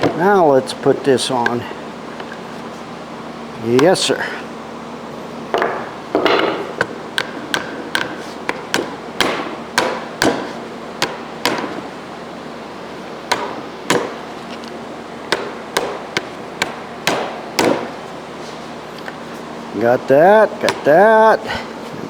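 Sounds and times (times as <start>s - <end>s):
sharp knocks on metal parts: 5.5s - 11.9s, 13.3s - 14.2s, 15.3s - 18.0s, 20.6s - 21.0s.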